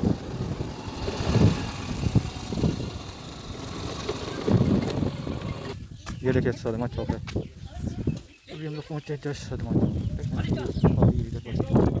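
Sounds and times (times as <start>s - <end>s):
vehicle engine rumbling: 0.0s - 5.8s.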